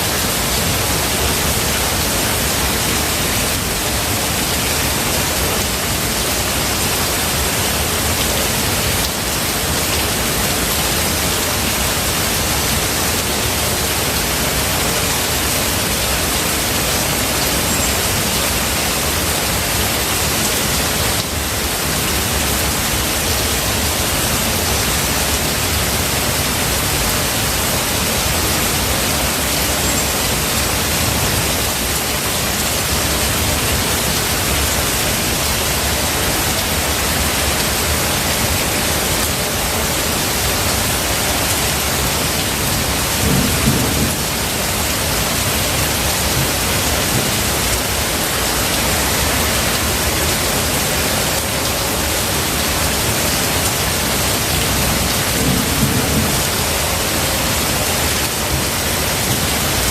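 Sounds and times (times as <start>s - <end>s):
heavy rain: 0.0s - 59.9s
thunder rumbling: 42.7s - 48.0s, 54.8s - 56.8s.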